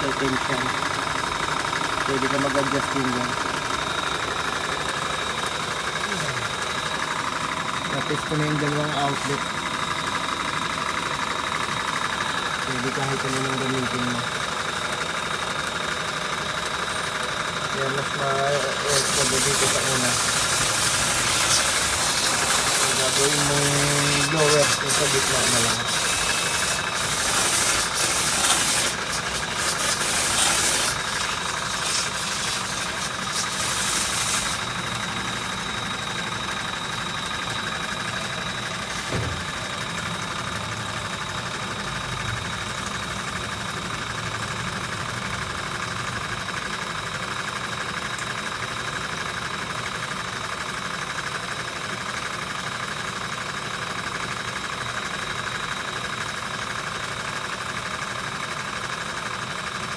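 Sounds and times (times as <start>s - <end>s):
machine motor whining: 17.7s - 40.0s
bursts of hiss: 18.4s - 35.7s
brief thud: 39.0s - 39.5s.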